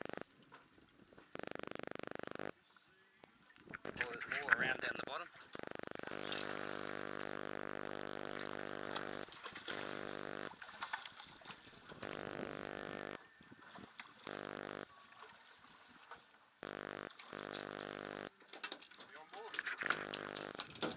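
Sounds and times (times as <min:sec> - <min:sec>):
clicks: 0:01.3 - 0:02.5, 0:11.9 - 0:13.2, 0:16.6 - 0:20.9
steady motor drone: 0:05.6 - 0:10.5, 0:12.0 - 0:13.2, 0:14.3 - 0:14.8, 0:16.6 - 0:18.3.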